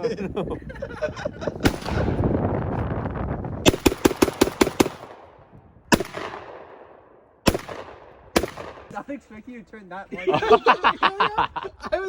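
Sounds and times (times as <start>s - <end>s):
gunshots with echo: 1.6s - 2.4s, 3.6s - 9.2s.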